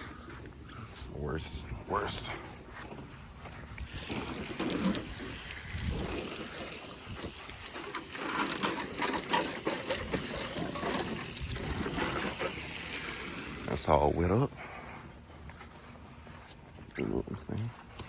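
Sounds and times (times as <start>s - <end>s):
hose spraying water on car: 3.8s - 14.5s.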